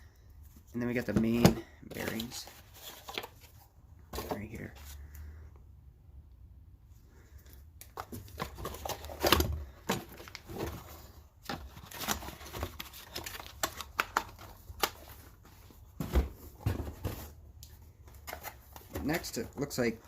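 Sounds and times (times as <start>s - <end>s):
packaging rustling and crinkling: 7.8s - 17.4s.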